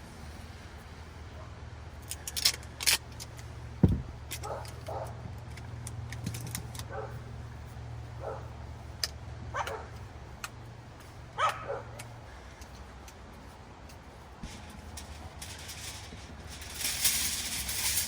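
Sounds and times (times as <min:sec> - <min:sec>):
low steady hum: 0:00.0 - 0:18.0
dog yipping: 0:11.4 - 0:12.0.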